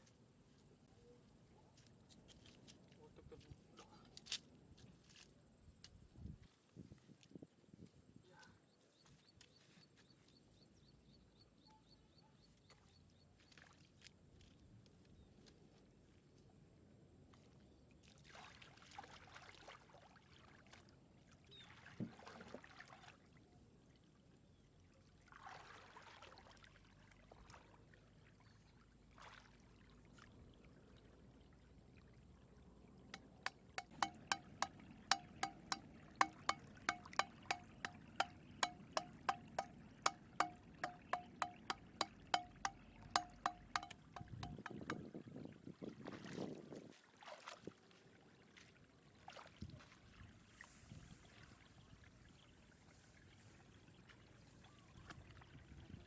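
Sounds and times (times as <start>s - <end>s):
water splashing and trickling: 17.4s - 56.0s
sharp ringing clicks: 33.2s - 44.9s.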